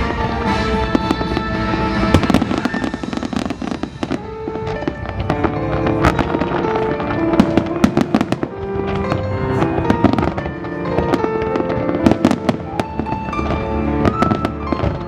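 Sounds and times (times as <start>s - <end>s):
fireworks bangs and crackles: 0.0s - 15.0s
loud music: 0.0s - 15.0s.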